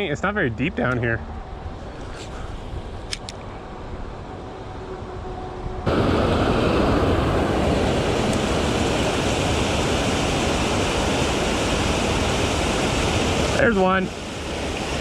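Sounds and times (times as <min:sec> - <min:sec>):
rushing creek water: 0:05.9 - 0:15.0.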